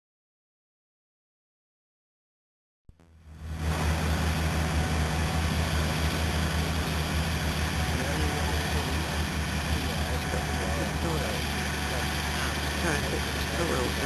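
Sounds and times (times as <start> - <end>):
tractor diesel engine droning: 3.2 - 14.0
faint voices: 7.8 - 14.0.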